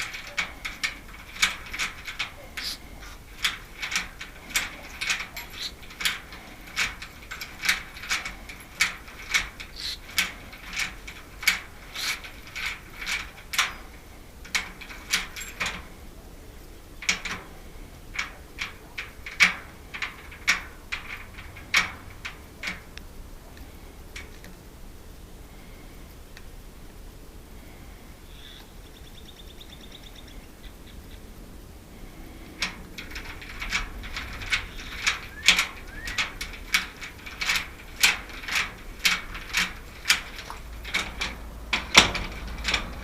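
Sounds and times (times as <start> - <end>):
metal mechanism clicking: 0.0 - 16.1, 17.0 - 24.6, 32.4 - 43.0.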